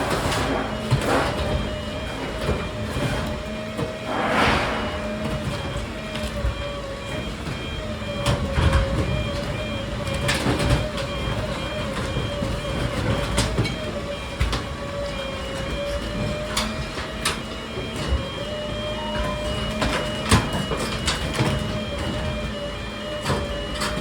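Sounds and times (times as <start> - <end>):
garbage truck whine: 0.0 - 24.0.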